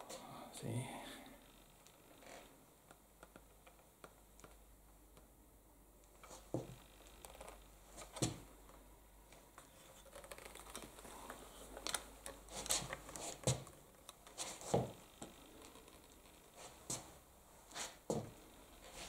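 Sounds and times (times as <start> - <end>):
rustling: 6.2 - 19.0.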